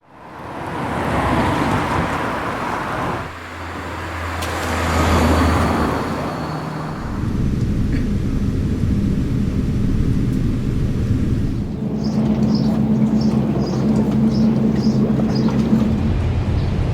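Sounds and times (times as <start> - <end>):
vehicles passing by: 0.0 - 16.9
low engine hum: 3.0 - 16.9
low engine rumble: 5.4 - 16.9.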